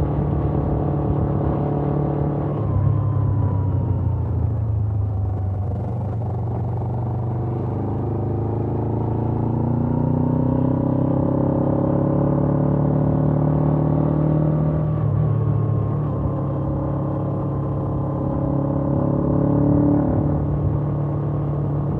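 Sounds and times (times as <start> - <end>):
motorcycle engine revving: 5.2 - 21.9.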